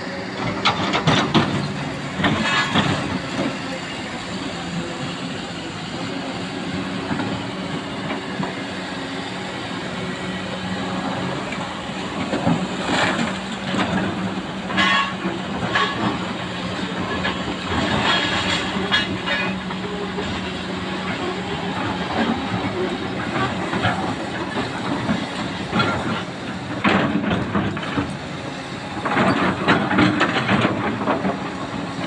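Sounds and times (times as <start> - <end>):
excavator diesel engine running: 0.0 - 32.0
metal clanks and squeals: 0.4 - 3.7, 14.7 - 28.1, 29.0 - 31.5.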